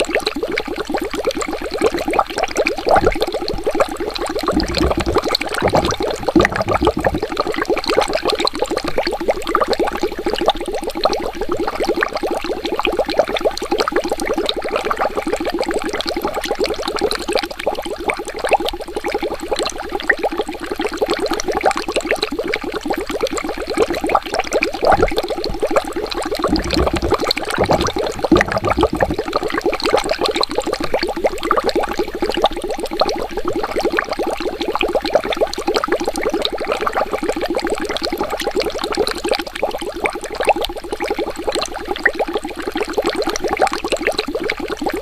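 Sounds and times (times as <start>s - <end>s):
water bubbling: 0.0s - 12.2s, 22.4s - 35.4s
low water gurgles: 0.0s - 45.0s.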